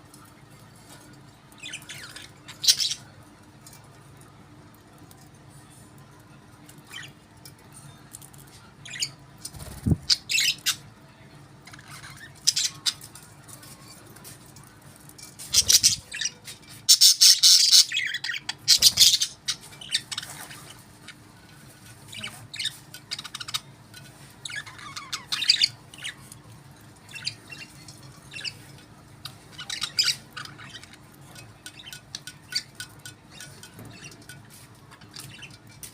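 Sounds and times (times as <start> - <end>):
budgerigars chirping and squawking: 1.5 - 3.2, 8.8 - 10.9, 11.7 - 13.8, 15.4 - 35.9.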